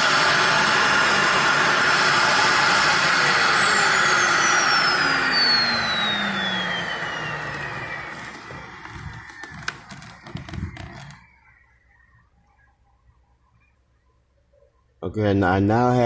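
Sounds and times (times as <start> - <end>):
vacuum cleaner motor winding down: 0.0 - 11.4.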